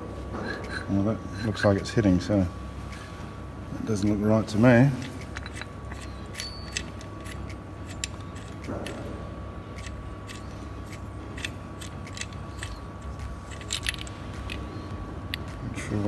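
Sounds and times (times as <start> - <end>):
faint steady hum: 0.0 - 16.0
tools clicking and tapping: 5.0 - 9.1, 9.8 - 15.6.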